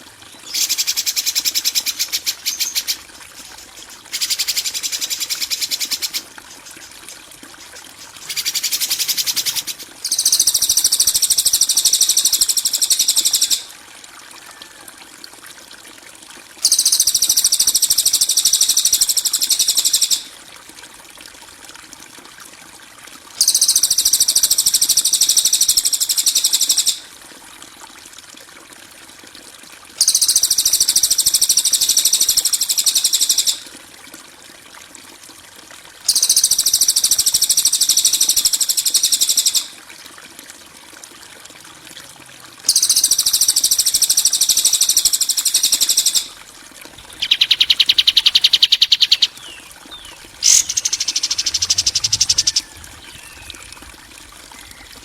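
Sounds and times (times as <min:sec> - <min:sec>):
high-pitched bird chatter: 0:07.6 - 0:11.8, 0:47.0 - 0:53.7.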